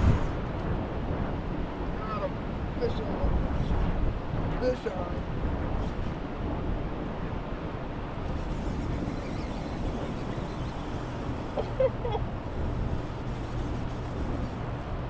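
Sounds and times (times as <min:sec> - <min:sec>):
wind on microphone: 0:00.0 - 0:15.0
fast river current rushing: 0:07.8 - 0:15.0.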